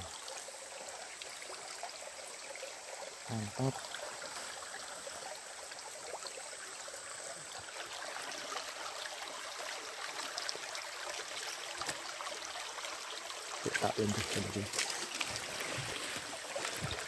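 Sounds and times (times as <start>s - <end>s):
stream water rushing: 0.0s - 17.0s.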